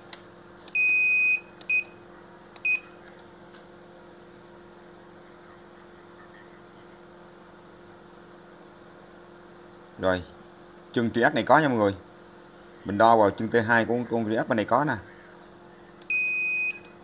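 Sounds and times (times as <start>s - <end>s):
faint steady hum: 0.0s - 17.0s
washing machine beeps: 0.7s - 2.0s, 2.6s - 3.0s, 16.0s - 17.0s.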